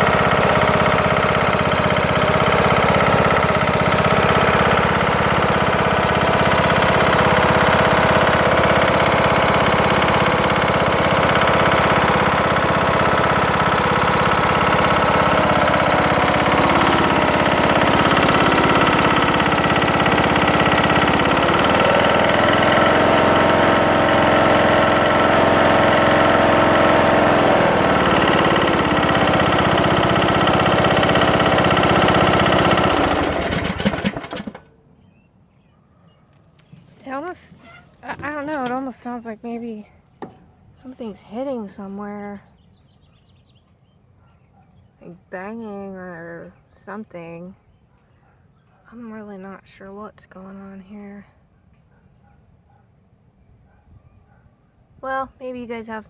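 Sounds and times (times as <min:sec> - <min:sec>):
lawn tractor engine knocking: 0:00.0 - 0:34.8, 0:36.6 - 0:39.2, 0:40.1 - 0:41.4.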